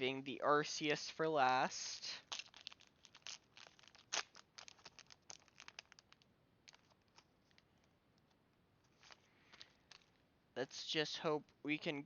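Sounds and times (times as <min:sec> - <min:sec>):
foil wrapper crinkling: 0:02.2 - 0:07.6.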